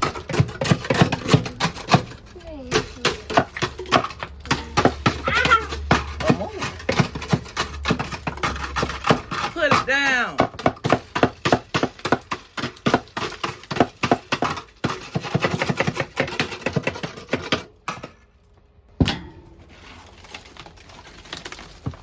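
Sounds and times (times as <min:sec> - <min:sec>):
ice being chipped: 0:00.0 - 0:17.7, 0:19.6 - 0:22.0
heavy ice crack: 0:19.6 - 0:22.0.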